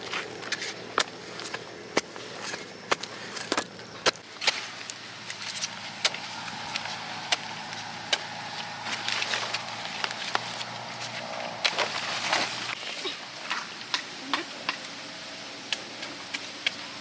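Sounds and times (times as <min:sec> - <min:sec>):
mid-pitched hum: 0:03.8 - 0:12.8.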